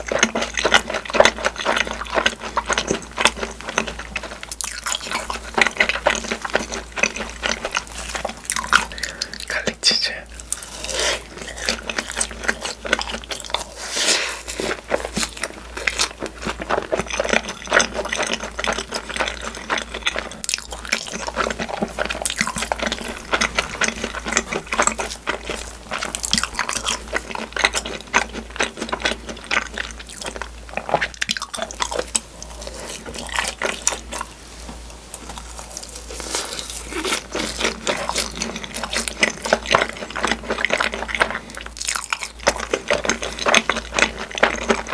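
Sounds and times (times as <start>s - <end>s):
close chewing with wet mouth sounds: 0.0s - 44.9s.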